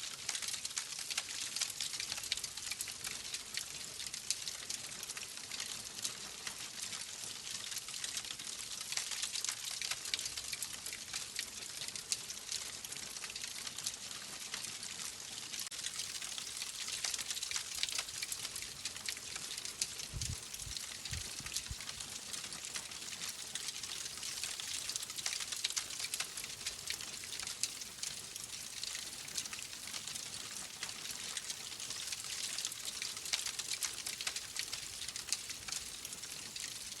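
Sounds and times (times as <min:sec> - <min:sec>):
wood fire crackling: 0:15.7 - 0:37.0.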